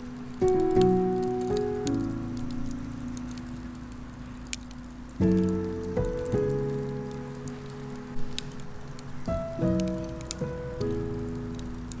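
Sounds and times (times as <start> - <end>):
background music with held notes: 0.0 - 12.0
campfire crackling: 0.0 - 12.0.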